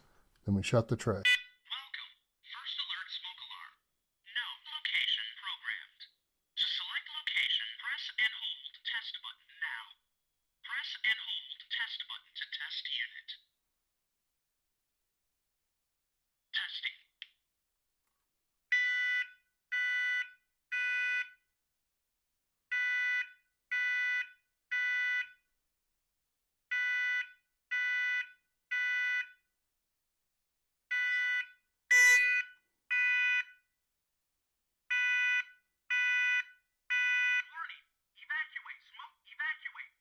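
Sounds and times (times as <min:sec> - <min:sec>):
smoke alarm beeps: 0:01.2 - 0:01.6, 0:18.7 - 0:21.4, 0:22.7 - 0:25.4, 0:26.7 - 0:29.4, 0:30.9 - 0:33.6, 0:34.9 - 0:37.5.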